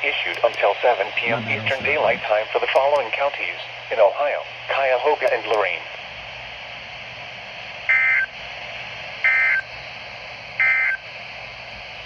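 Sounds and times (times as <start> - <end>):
radio hiss: 0.0 - 7.8.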